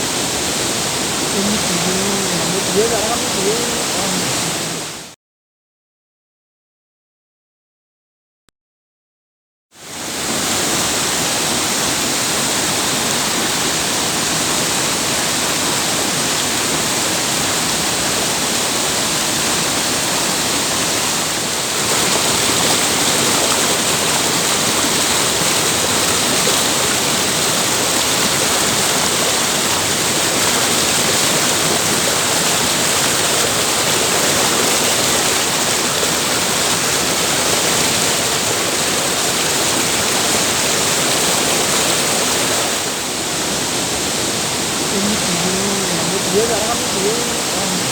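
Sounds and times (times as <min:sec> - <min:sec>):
waterfall rushing: 0:00.0 - 0:05.1, 0:09.8 - 0:47.9.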